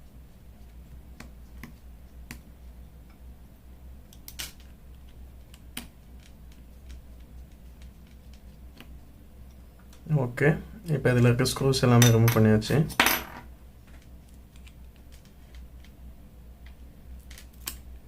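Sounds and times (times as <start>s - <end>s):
faint low hum: 0.0s - 18.0s.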